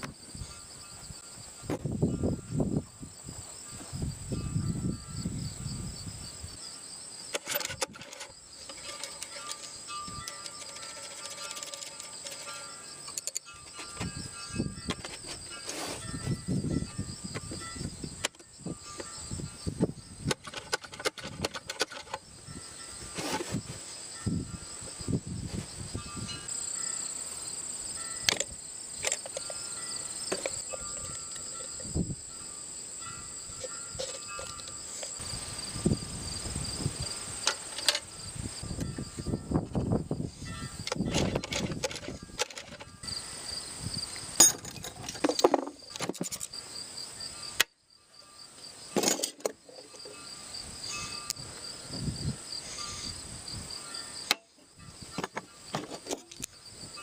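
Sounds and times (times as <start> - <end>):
insects chirping: 0.0 - 57.0
hard objects handled and set down: 7.3 - 14.2, 14.8 - 16.4, 20.2 - 22.2, 23.1 - 23.8, 28.2 - 32.0, 33.6 - 35.3, 37.4 - 38.1, 40.8 - 43.0, 44.4 - 46.5, 48.9 - 50.2, 54.3 - 56.5.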